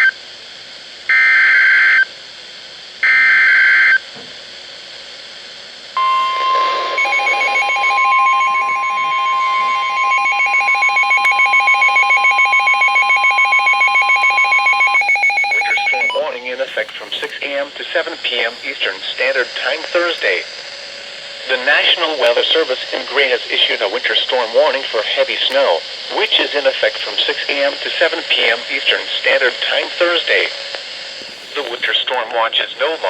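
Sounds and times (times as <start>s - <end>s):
rapidly pulsing electronic beep: 6.0s - 16.6s
steady warning alarm tone: 6.0s - 20.2s.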